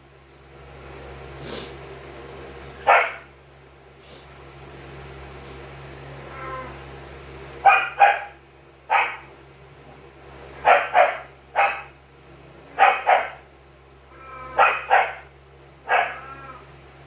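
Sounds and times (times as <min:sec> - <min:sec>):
dog barking: 0:02.8 - 0:03.3, 0:07.6 - 0:09.3, 0:10.6 - 0:12.0, 0:12.7 - 0:13.5, 0:14.4 - 0:16.4.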